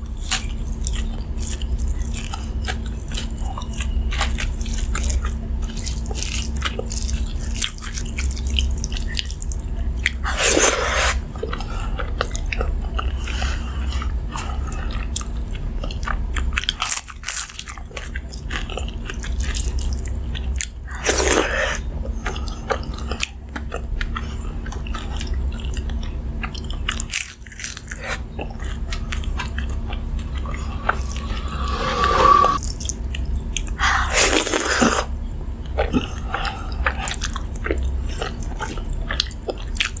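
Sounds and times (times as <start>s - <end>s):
chewing food: 0.0s - 40.0s
crunchy bites: 15.0s - 23.7s, 24.7s - 31.8s, 32.4s - 35.1s.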